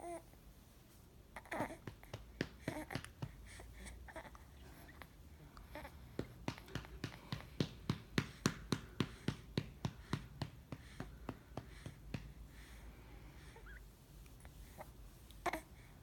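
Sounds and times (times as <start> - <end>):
quick taps: 1.8 - 3.5, 6.2 - 12.4.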